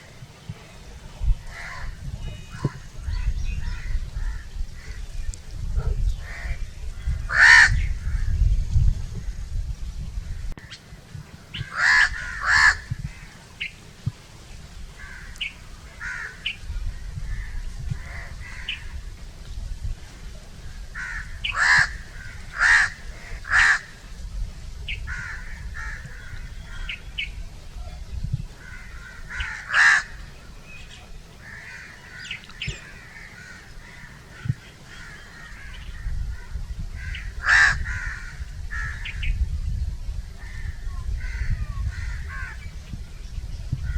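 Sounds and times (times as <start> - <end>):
crows cawing: 7.3 - 8.2, 11.6 - 13.3, 15.0 - 16.5, 17.3 - 19.0, 21.0 - 23.9, 25.1 - 27.0, 28.6 - 30.2, 31.4 - 39.2, 40.4 - 42.6.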